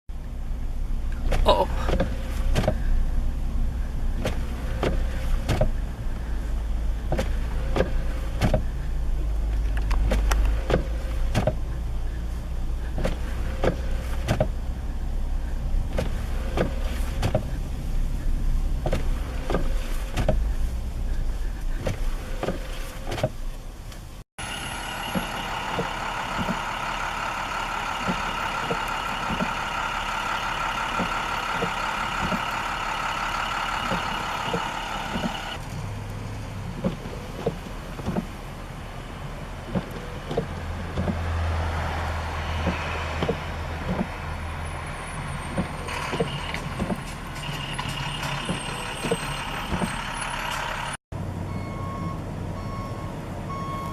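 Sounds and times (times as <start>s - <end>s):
low engine rumble: 0.1s - 53.9s
multi-pitched vehicle whine: 0.1s - 53.9s
sharp clicks and knocks: 1.1s - 2.9s, 4.2s - 6.3s, 7.0s - 8.8s, 9.4s - 11.8s, 12.9s - 14.6s, 18.8s - 24.1s, 31.0s - 32.6s, 39.7s - 41.2s, 42.6s - 44.2s, 45.5s - 50.7s.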